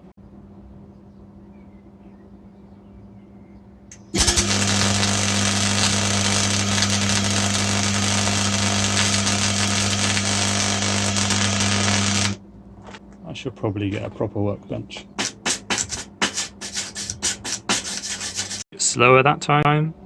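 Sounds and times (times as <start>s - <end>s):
low electrical hum: 0.0s - 15.4s
welding arc crackling sizzle: 3.9s - 12.4s.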